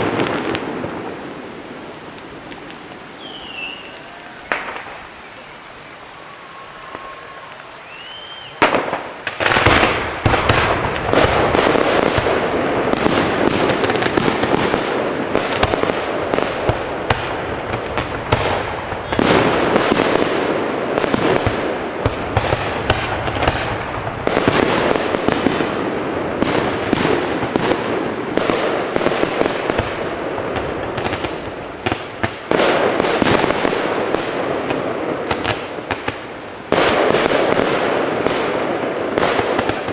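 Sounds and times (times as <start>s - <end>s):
fireworks banging and crackling: 0.0s - 39.9s
rising firework whistle: 0.0s - 39.9s.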